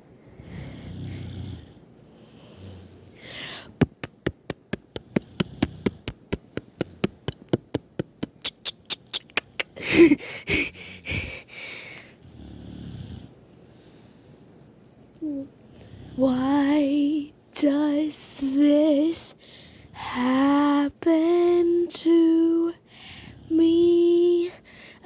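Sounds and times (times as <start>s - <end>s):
sharp clicks: 3.8s - 9.8s
girl snoring: 9.4s - 13.2s.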